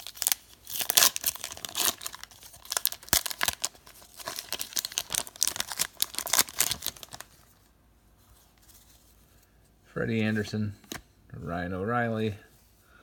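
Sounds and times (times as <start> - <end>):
foil wrappers crinkling and tearing: 0.0 - 7.4.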